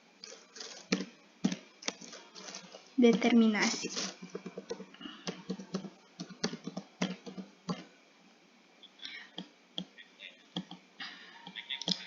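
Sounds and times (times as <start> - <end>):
computer mouse clicking: 3.9 - 7.9.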